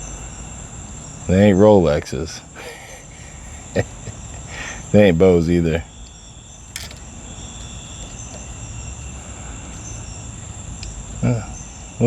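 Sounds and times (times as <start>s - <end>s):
crickets trilling: 0.0s - 12.0s
sharp click: 6.8s - 7.7s.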